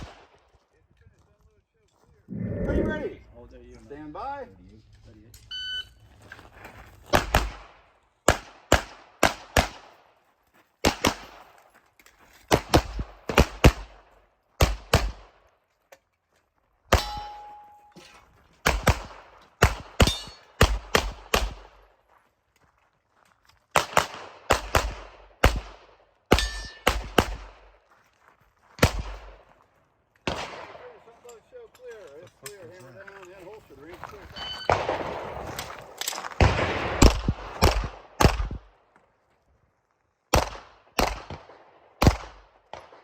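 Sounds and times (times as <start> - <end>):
pistol shots: 7.1 - 10.1, 10.8 - 11.4, 14.6 - 15.4, 16.9 - 17.7, 18.6 - 21.8, 23.8 - 27.7, 30.2 - 31.0, 34.6 - 38.7, 40.3 - 43.0
steel target ringing: 17.0 - 18.0, 26.4 - 26.8.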